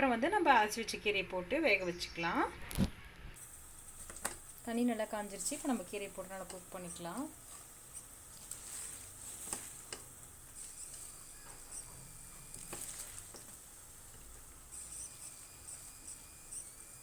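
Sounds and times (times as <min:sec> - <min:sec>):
leaves sizzling in a pan: 0:03.4 - 0:17.0.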